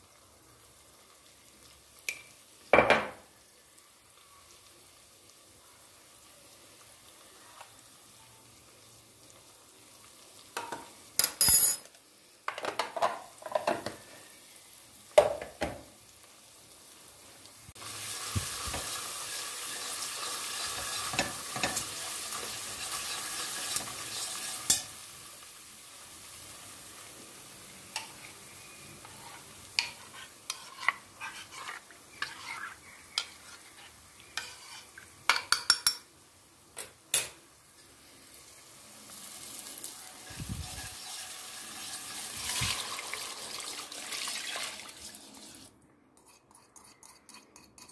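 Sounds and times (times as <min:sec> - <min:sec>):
sizzling: 0:00.0 - 0:47.9
spoon clinking against pan: 0:24.6 - 0:24.9, 0:35.3 - 0:36.1.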